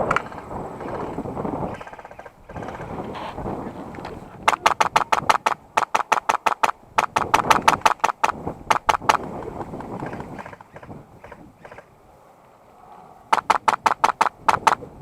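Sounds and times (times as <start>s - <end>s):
airsoft gun firing bursts: 4.5s - 9.2s, 13.4s - 14.8s.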